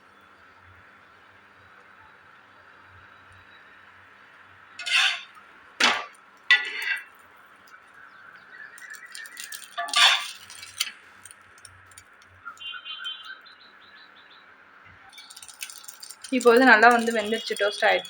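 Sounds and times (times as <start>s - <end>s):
metal utensil scraping pan: 4.8s - 7.1s, 9.0s - 10.9s.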